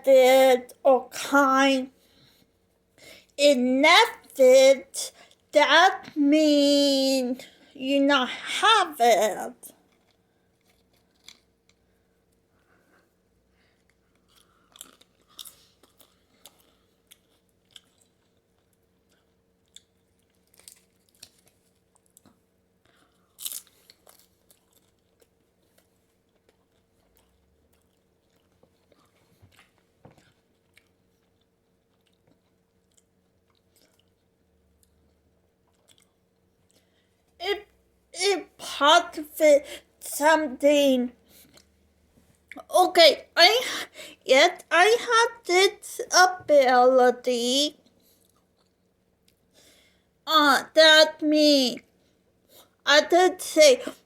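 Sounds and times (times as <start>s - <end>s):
faint steady hum: 0.0s - 54.0s
person chewing crunchy food: 9.8s - 12.4s, 13.7s - 37.0s, 47.8s - 49.5s.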